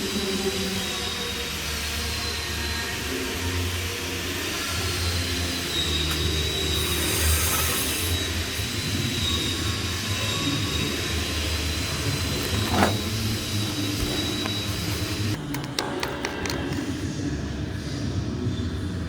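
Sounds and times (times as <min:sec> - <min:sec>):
low welder hum: 0:00.0 - 0:15.5
crackling welding arc: 0:03.1 - 0:15.4.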